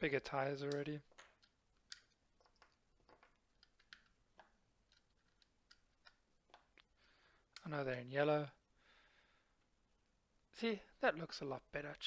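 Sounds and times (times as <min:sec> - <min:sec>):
plastic toy bricks clicking: 0:01.1 - 0:06.8.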